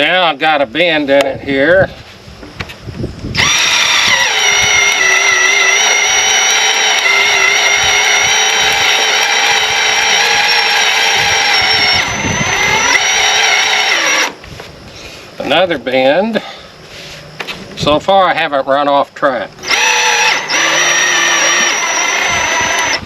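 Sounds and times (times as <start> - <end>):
tractor drivetrain whining: 3.3 - 15.2, 19.6 - 23.0.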